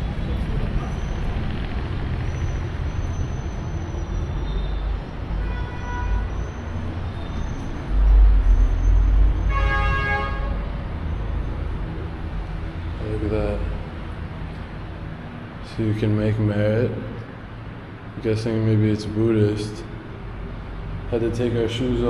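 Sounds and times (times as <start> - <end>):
street traffic rumbling: 0.0 - 22.0
vehicle horn tooting: 5.4 - 6.4, 9.4 - 10.6.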